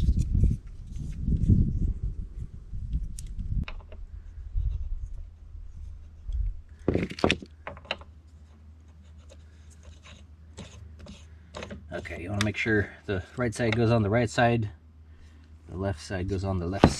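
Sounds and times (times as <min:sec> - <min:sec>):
bike parts bumping and rubbing: 0:03.0 - 0:12.6, 0:16.7 - 0:16.9.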